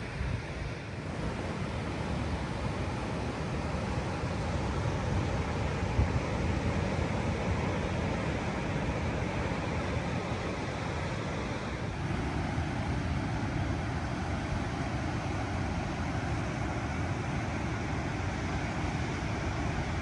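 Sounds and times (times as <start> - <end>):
ocean surf: 0.0 - 20.0.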